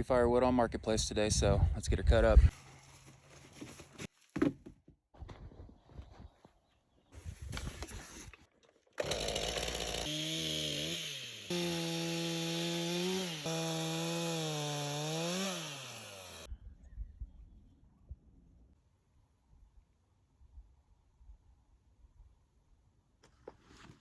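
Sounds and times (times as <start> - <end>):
chainsaw cutting firewood: 9.0 - 16.5.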